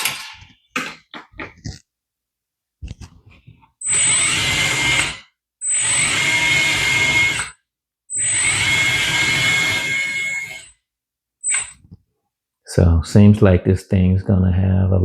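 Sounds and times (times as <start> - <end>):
toy excavator track drive whining: 3.9 - 7.6, 8.2 - 10.7.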